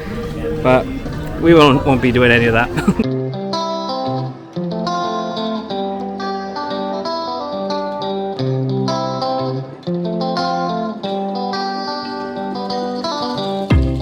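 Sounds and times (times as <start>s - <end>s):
plucked guitar melody: 0.0s - 14.0s.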